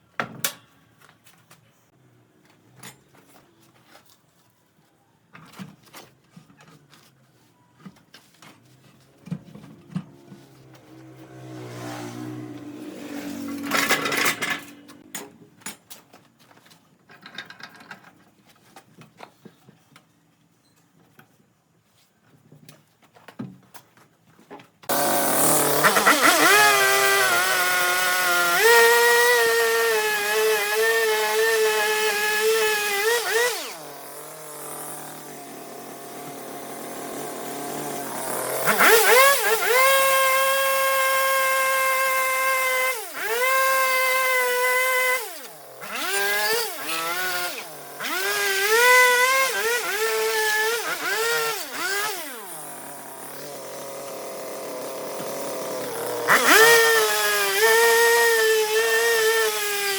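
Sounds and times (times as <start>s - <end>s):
chainsaw cutting wood: 9.8s - 15.2s, 24.9s - 59.9s.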